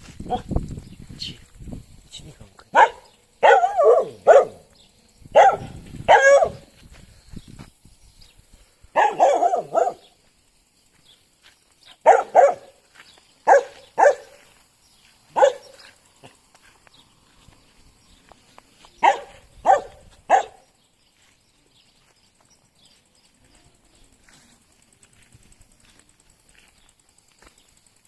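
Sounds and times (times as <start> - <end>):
dog barking: 0.3 - 0.5, 2.7 - 4.7, 5.3 - 6.7, 9.0 - 10.1, 12.0 - 12.8, 13.4 - 14.4, 15.3 - 16.4, 19.0 - 20.7.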